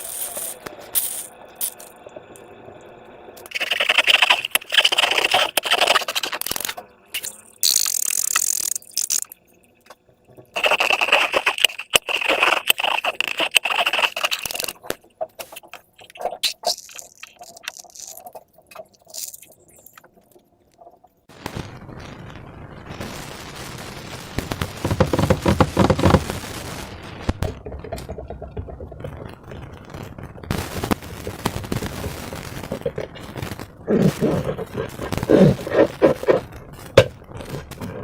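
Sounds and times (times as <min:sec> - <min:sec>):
small clicks and crackles: 0:03.4 - 0:21.7, 0:24.2 - 0:38.0
slime and balloon squishing: 0:03.5 - 0:09.2, 0:10.6 - 0:20.0, 0:24.4 - 0:26.5, 0:30.3 - 0:38.0.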